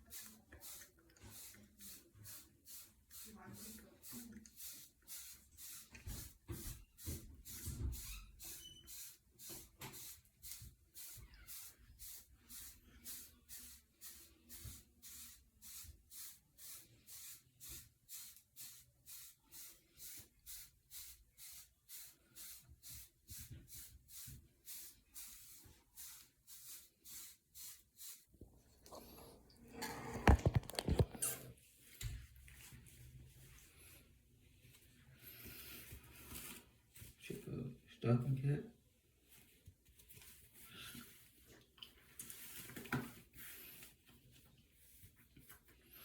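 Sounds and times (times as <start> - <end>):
brush swishing through hair: 0.0 - 29.3, 31.8 - 37.2.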